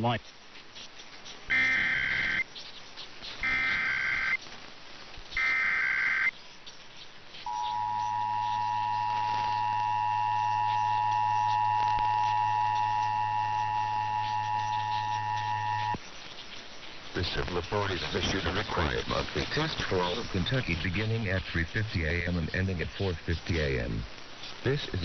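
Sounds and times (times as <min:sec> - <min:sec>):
buzzy digital data bursts: 0:01.5 - 0:02.4, 0:03.4 - 0:04.4, 0:05.3 - 0:06.3, 0:07.5 - 0:16.2, 0:17.2 - 0:25.0
two-tone attention signal: 0:07.5 - 0:16.0.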